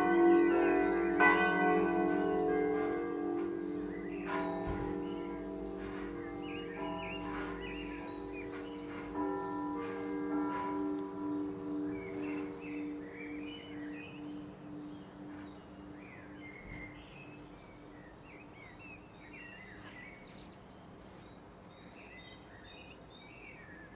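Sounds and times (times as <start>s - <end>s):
church bell hum: 0.0s - 17.8s
songbirds chirping: 0.0s - 23.9s.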